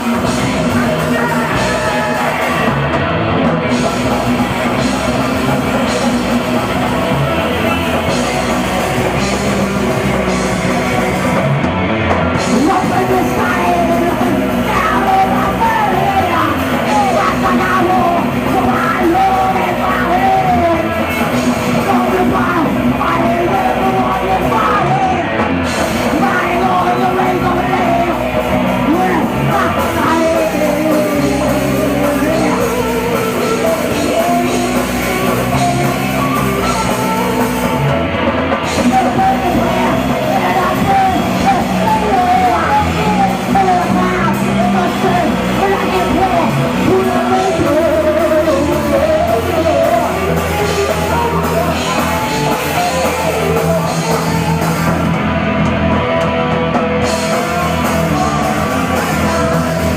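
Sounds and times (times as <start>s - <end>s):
person yelling vocals: 0.0s - 2.8s, 12.5s - 37.9s, 38.7s - 55.2s
distorted electric guitars: 0.0s - 59.9s
drum kit: 0.0s - 59.9s.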